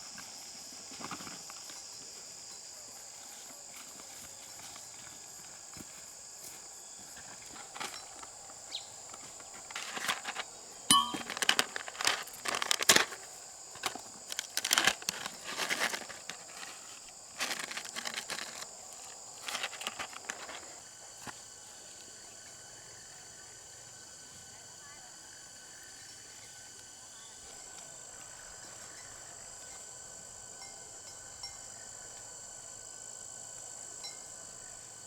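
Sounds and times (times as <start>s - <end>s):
rustling and crackling: 7.2s - 20.8s.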